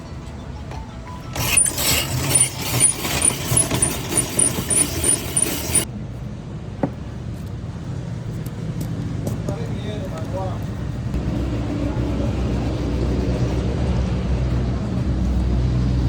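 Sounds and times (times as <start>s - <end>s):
ice crusher grinding ice: 1.3s - 5.9s
low steady rumble: 10.4s - 16.0s.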